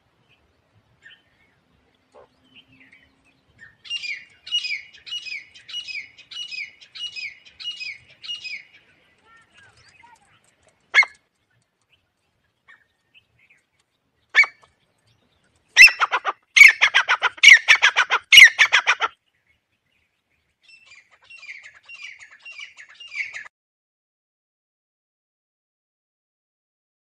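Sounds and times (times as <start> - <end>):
francolin calling: 3.6 - 9.0, 15.8 - 19.2.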